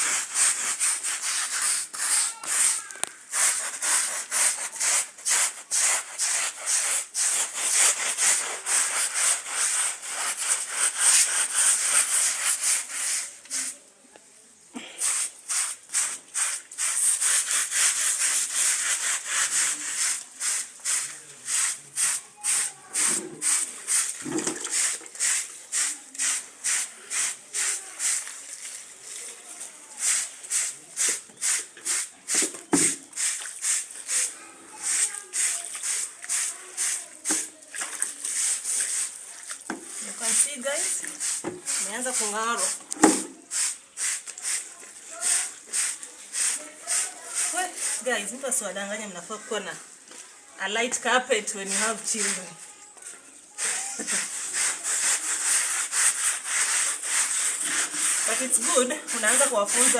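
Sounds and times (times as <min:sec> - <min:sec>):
stiff brush scrubbing carpet: 0:00.0 - 0:13.3, 0:15.0 - 0:28.2, 0:33.1 - 0:37.1, 0:45.2 - 0:48.0, 0:53.7 - 0:59.9.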